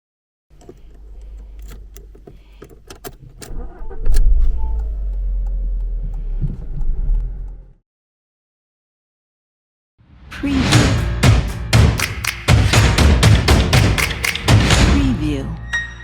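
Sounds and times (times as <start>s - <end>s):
keys clicking and jangling: 0.6s - 3.5s
car engine starting and running: 0.6s - 7.8s.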